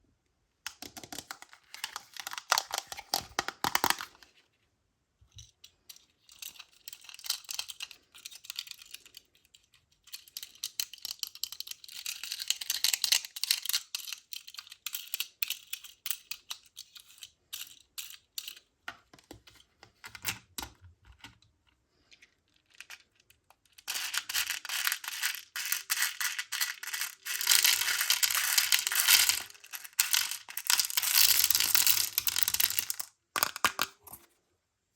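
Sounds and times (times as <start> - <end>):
beads clicking and clattering: 22.6 - 34.2.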